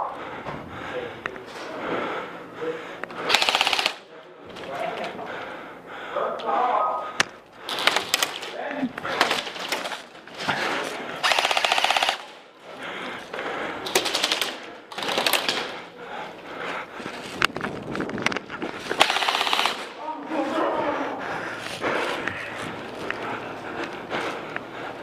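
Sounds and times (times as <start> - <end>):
airsoft rifles firing bursts: 3.2 - 4.1, 7.7 - 8.6, 11.2 - 12.5, 13.8 - 15.8, 18.9 - 20.1.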